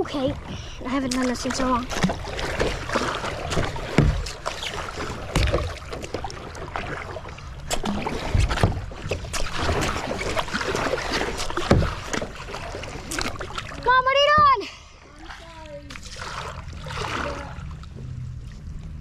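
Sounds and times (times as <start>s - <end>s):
water splashing against kayak: 0.0s - 19.0s
dull knocks on boat: 3.4s - 4.5s, 5.1s - 6.3s, 7.7s - 9.9s, 11.5s - 12.4s.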